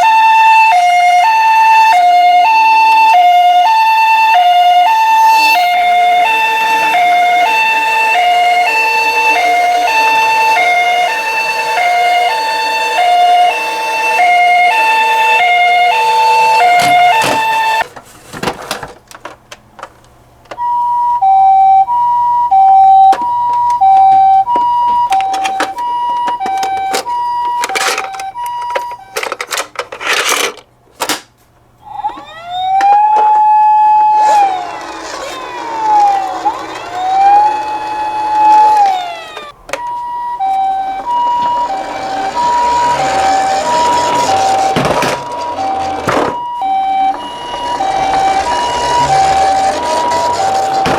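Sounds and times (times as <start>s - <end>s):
toy two-tone siren: 0.0s - 17.8s, 20.6s - 29.8s, 31.8s - 50.9s.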